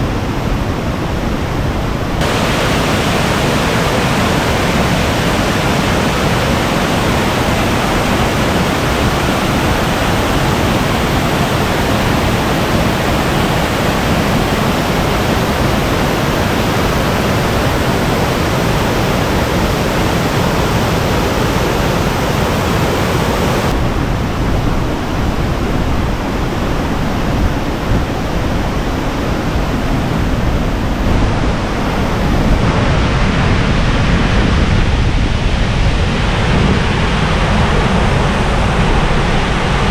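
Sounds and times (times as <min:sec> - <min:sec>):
water pouring over waterfall: 0:02.2 - 0:22.0.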